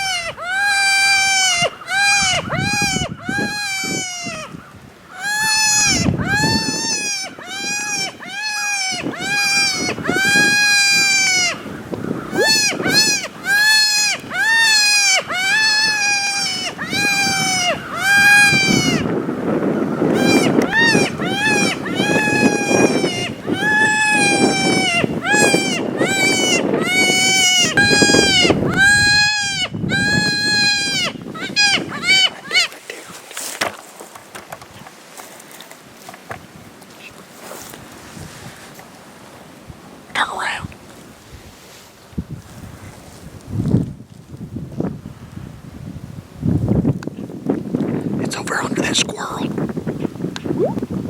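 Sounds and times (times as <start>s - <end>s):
predator call wailing cries: 0.0s - 19.1s, 20.1s - 32.7s.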